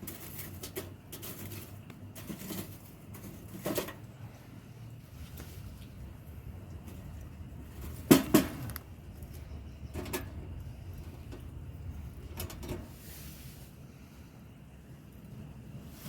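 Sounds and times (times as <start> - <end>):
low background hum: 0.0 - 16.0
knocking: 8.0 - 8.8.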